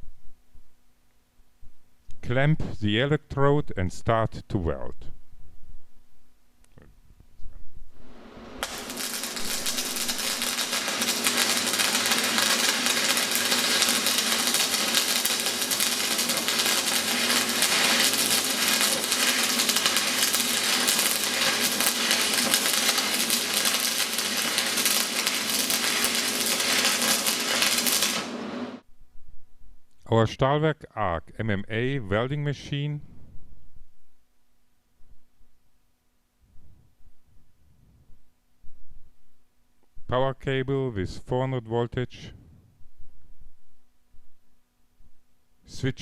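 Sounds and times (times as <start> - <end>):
welding arc crackling: 8.0 - 28.8.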